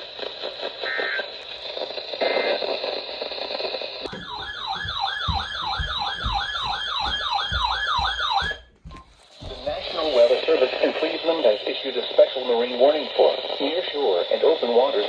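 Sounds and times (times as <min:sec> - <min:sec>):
radio hiss: 0:00.0 - 0:04.1, 0:09.4 - 0:15.0
siren yelping: 0:04.1 - 0:08.7.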